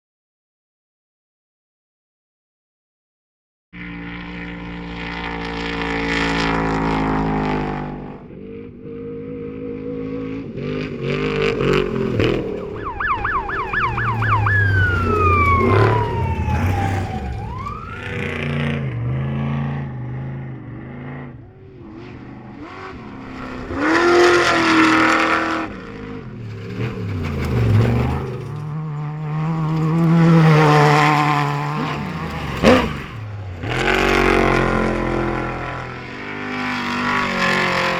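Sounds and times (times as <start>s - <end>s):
race vehicle engines passing: 3.8s - 37.9s
siren yelping and wailing: 12.0s - 19.1s.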